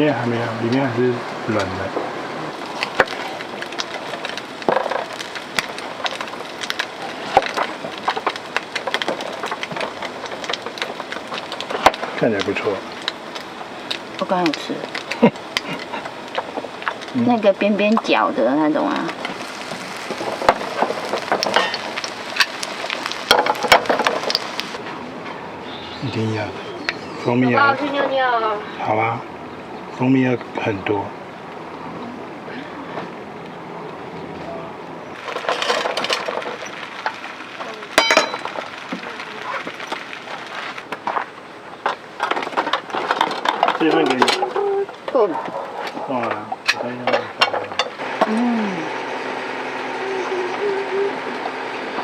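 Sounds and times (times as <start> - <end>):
food sizzling in a frying pan: 0.0 - 24.8, 35.1 - 52.0
ringing metallic clink: 38.0 - 38.5.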